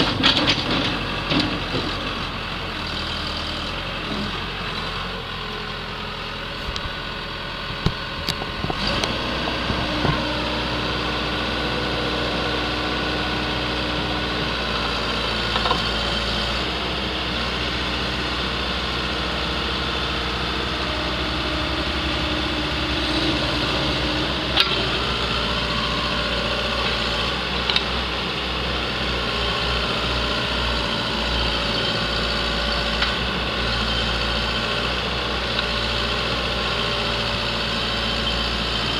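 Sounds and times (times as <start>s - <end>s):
diesel engine idling: 1.0s - 38.9s.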